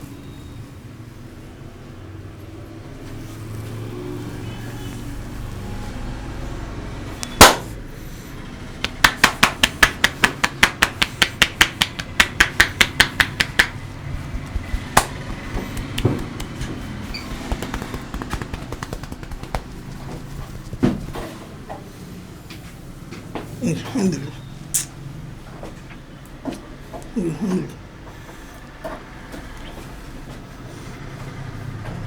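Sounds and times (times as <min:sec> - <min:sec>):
hands slapping on skin: 0:07.2 - 0:07.8, 0:08.8 - 0:21.4.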